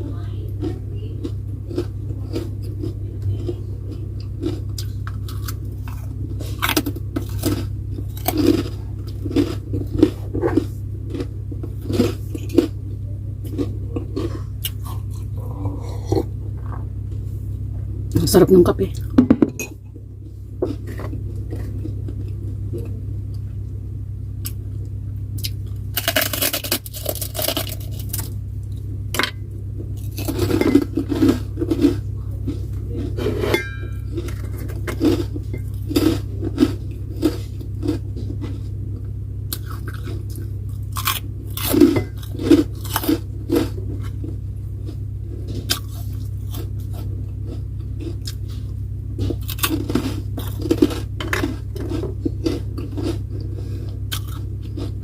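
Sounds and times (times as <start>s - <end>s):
steady low hum: 0.0s - 55.0s
crisp food being chewed: 0.6s - 16.9s, 24.4s - 29.0s, 29.8s - 55.0s
dishes and utensils clinking: 33.3s - 35.7s.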